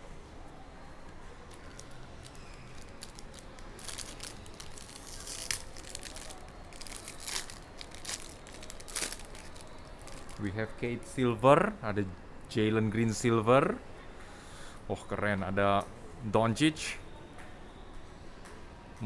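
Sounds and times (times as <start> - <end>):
wrapper crinkling and tearing: 1.5 - 10.5.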